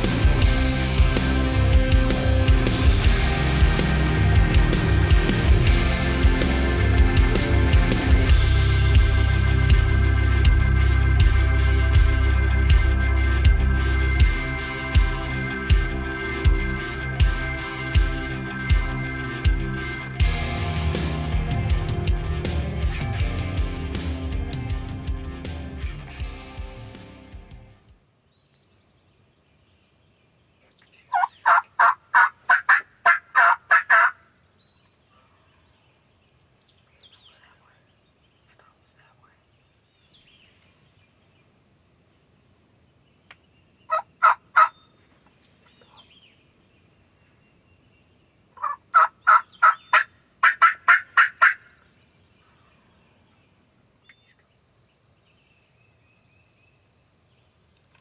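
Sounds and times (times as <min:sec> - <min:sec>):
turkey yelping: 0:31.1 - 0:34.2, 0:43.9 - 0:44.8, 0:48.6 - 0:51.7.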